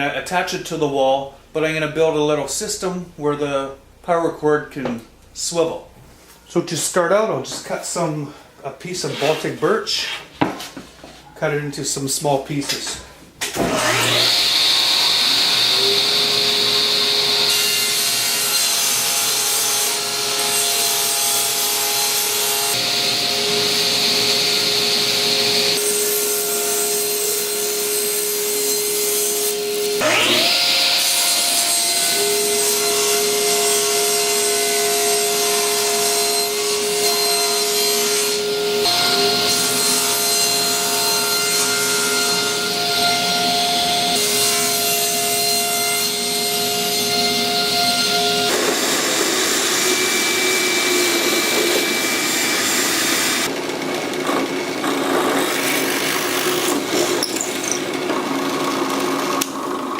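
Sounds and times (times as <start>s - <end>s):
electric saw cutting plywood: 13.6s - 59.9s.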